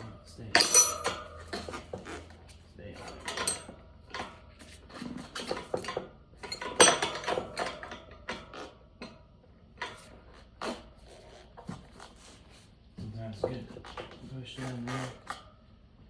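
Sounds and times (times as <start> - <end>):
metal tools clinking on wheel rim: 0.0 - 9.2.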